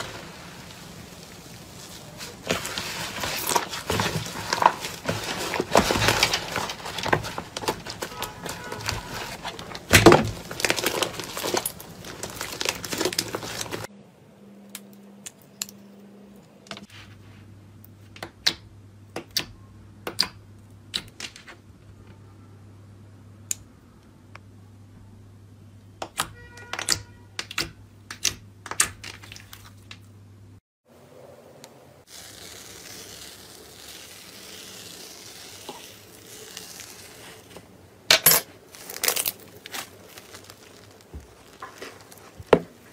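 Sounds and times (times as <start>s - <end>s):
slime crackling: 0.0s - 13.9s, 32.1s - 37.8s, 38.6s - 42.9s.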